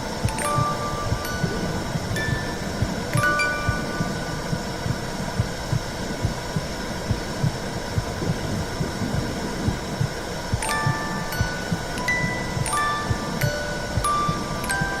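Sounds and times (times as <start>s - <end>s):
chime tones: 0.0s - 4.6s, 10.6s - 15.0s
heartbeat thumps: 0.0s - 15.0s
whooshing hum: 0.0s - 15.0s.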